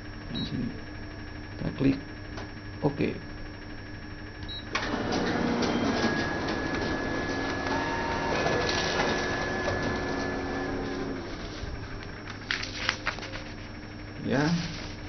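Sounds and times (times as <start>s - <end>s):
photocopier printing: 4.7s - 15.0s.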